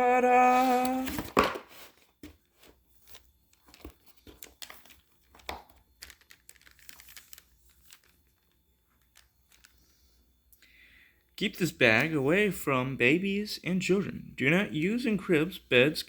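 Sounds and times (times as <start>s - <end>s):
plastic bag crinkling: 3.1s - 10.0s.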